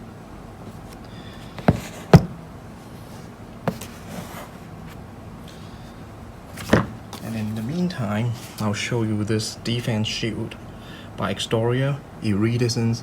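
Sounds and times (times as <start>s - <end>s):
low steady hum: 0.0s - 13.0s
handling knocks: 1.6s - 2.4s, 6.5s - 7.4s.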